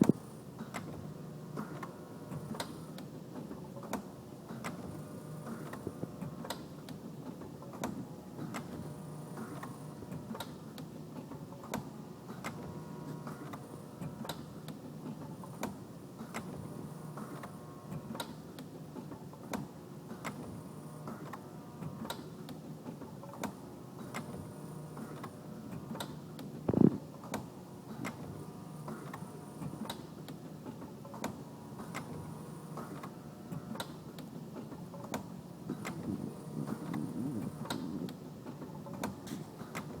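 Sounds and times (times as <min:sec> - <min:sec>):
steady machine hum: 0:35.4 - 0:40.0.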